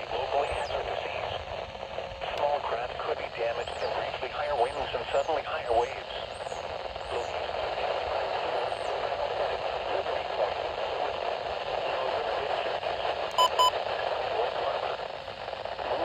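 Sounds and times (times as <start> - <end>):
broadcast voice on radio: 0.0 - 1.6, 2.2 - 6.3, 7.0 - 15.1
radio static hiss: 0.0 - 16.0
short electronic beep: 13.4 - 13.7.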